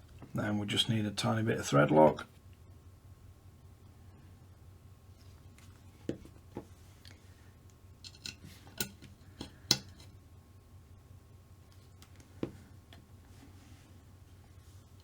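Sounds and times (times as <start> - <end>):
small tools clicking and tapping: 8.0 - 10.1.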